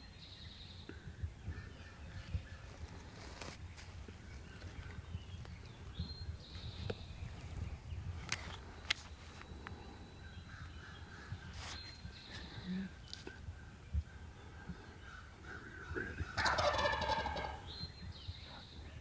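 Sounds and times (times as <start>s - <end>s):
birds calling: 0.0s - 19.0s.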